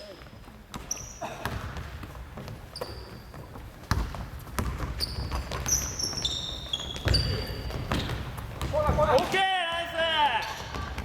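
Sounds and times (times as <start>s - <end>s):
sneakers squeaking on floor: 0.0s - 11.0s
basketball bouncing: 0.7s - 9.4s.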